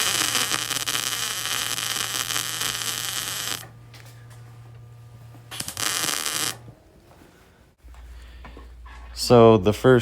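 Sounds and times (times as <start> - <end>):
welding arc crackling and hissing: 0.0 - 3.8, 5.5 - 6.7
welder low hum: 0.0 - 6.8.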